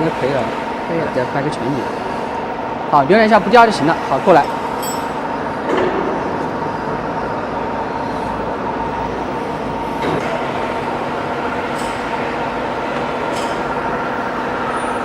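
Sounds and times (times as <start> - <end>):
plasma cutting machine hissing: 0.0 - 7.0.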